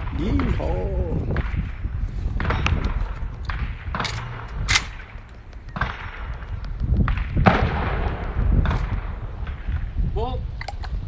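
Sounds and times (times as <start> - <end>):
wind rumbling on microphone: 0.0 - 11.0
sharp cracks and knocks: 1.3 - 9.9.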